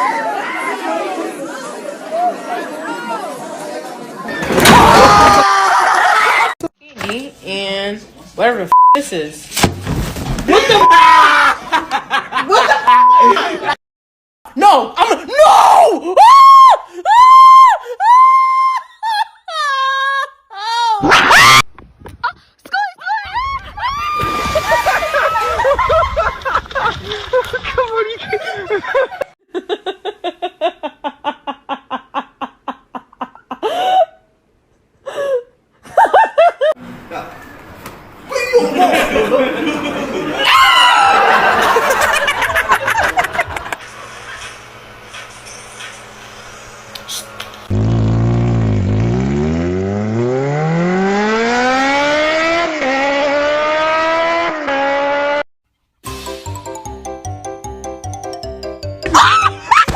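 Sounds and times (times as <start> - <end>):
person laughing: 10.5 - 13.8, 38.3 - 40.4, 41.4 - 43.8
rising cry: 10.6 - 11.6, 40.3 - 41.7
engine accelerating: 45.9 - 55.4.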